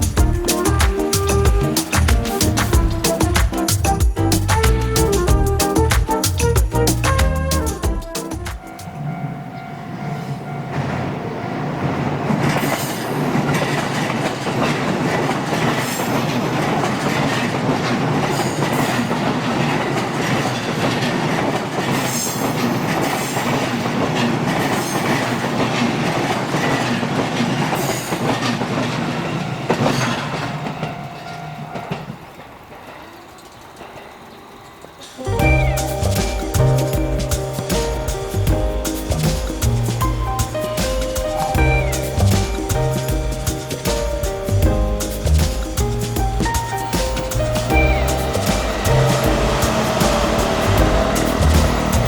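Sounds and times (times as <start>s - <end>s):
train wheels clattering: 0.0s - 52.0s
level crossing warning bell: 2.5s - 11.8s, 26.7s - 39.2s, 46.4s - 52.0s.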